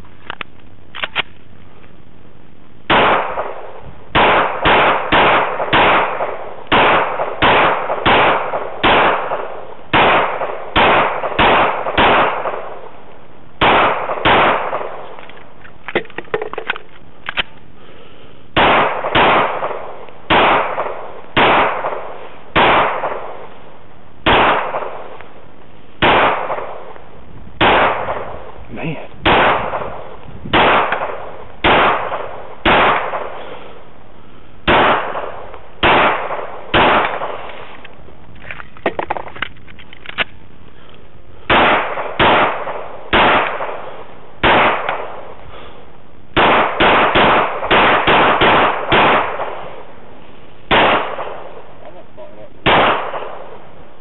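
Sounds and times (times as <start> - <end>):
rapid gunfire: 2.9 - 3.6, 4.2 - 12.6, 13.6 - 14.9, 18.6 - 22.0, 22.6 - 23.2, 24.3 - 25.0, 26.0 - 26.7, 27.6 - 33.4, 34.7 - 37.4, 41.5 - 43.8, 44.4 - 45.0, 46.4 - 49.6, 50.7 - 51.5, 52.6 - 53.4.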